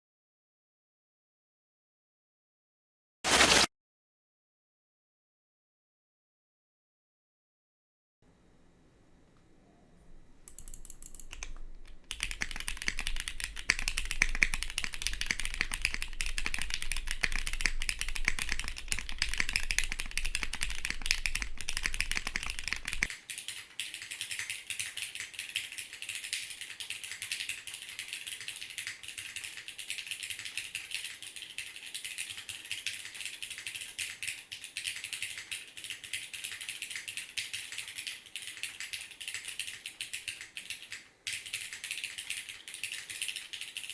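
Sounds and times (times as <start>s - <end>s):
mechanical keyboard typing: 10.5s - 43.9s.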